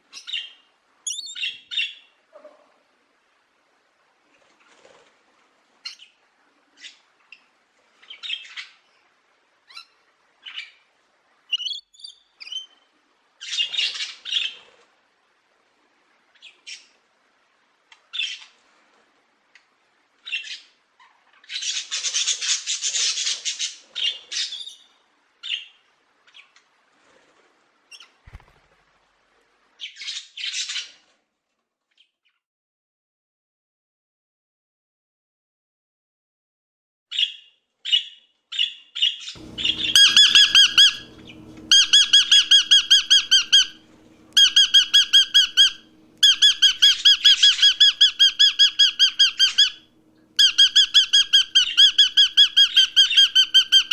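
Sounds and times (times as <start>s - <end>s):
bird whistled note: 1.1s - 1.4s, 39.4s - 49.8s
bird rapid rattling call: 39.4s - 43.8s, 44.4s - 49.8s, 50.4s - 53.9s
bird harsh calls: 39.4s - 53.9s.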